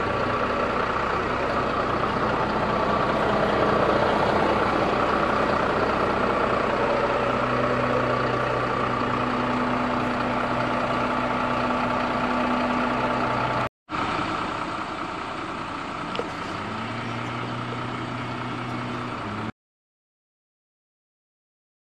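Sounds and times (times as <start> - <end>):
truck engine humming: 0.0 - 19.5.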